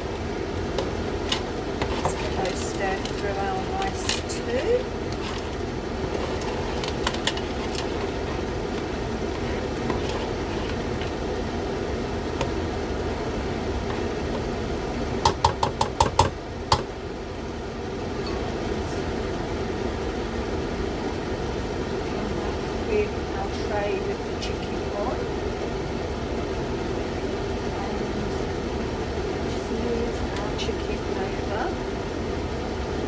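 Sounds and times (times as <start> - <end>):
extractor fan running: 0.0 - 33.0
spoon tapping against pot: 15.2 - 16.9.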